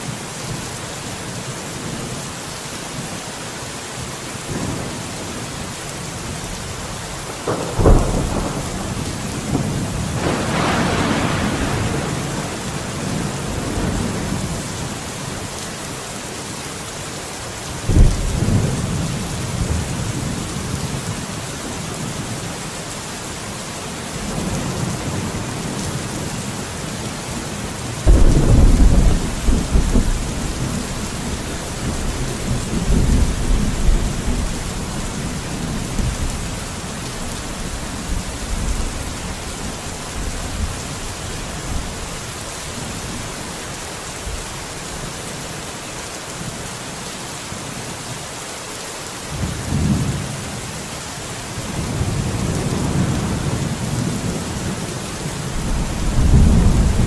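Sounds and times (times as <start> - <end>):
steady rain: 0.0 - 57.0
thunder rumbling: 7.0 - 15.0, 17.8 - 21.2, 28.0 - 42.0, 55.4 - 57.0.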